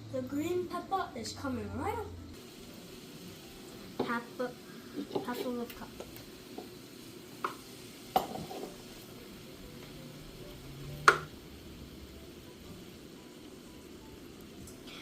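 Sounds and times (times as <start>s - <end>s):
faint steady hiss: 0.0s - 15.0s.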